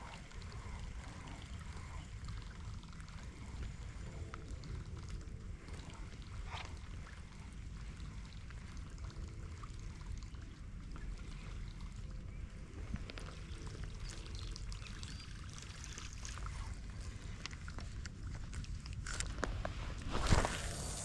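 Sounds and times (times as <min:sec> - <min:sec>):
rain ticking and hissing: 0:16.4 - 0:21.0.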